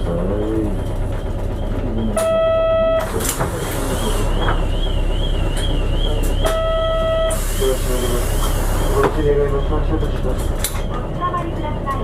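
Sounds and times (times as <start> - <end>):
bus engine idling: 0.0 - 12.0
electronic beeps: 1.6 - 3.1, 4.2 - 10.2.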